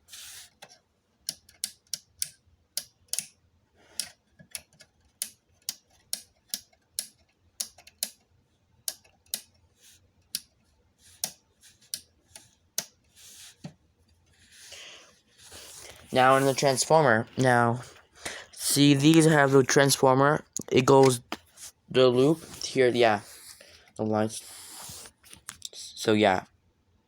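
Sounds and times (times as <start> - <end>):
plastic parts clicking and tapping: 0.5 - 9.6
soft rustle: 14.2 - 18.1.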